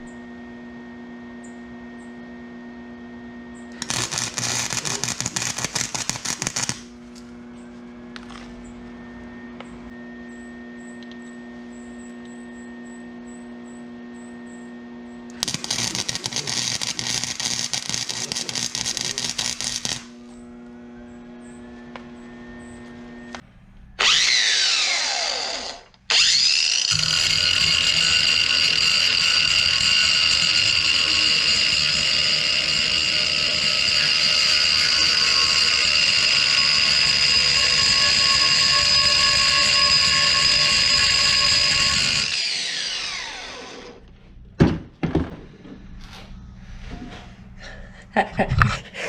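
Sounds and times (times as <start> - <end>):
angle grinder grinding metal: 3.8 - 6.9, 15.3 - 20.2, 24.0 - 44.1.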